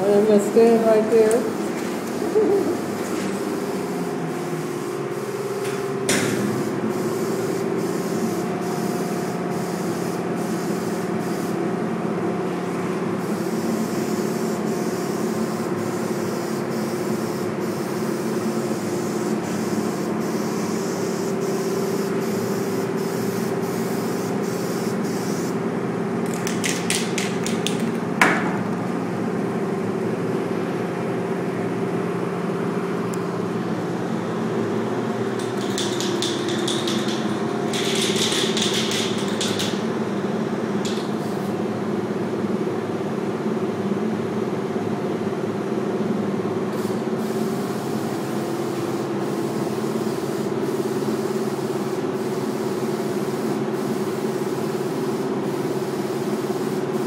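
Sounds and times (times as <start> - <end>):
spray paint hissing: 1.3 - 5.6, 6.4 - 11.7, 13.2 - 25.6, 26.2 - 28.0, 35.3 - 40.0, 40.8 - 41.6, 46.8 - 57.0
machine hum: 25.6 - 41.8
quick clicks: 35.4 - 39.8.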